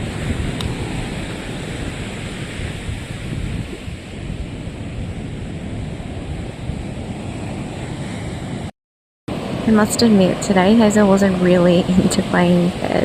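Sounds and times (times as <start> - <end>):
ocean surf on beach: 0.0 - 8.7, 9.3 - 13.0
wind buffeting microphone: 0.0 - 8.7, 9.3 - 13.0.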